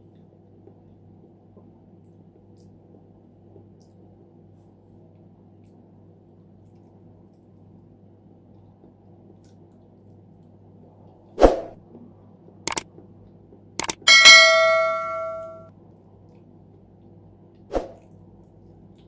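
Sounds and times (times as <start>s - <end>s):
sharp knocks: 13.8s - 15.6s
bell-like clang: 13.8s - 15.7s.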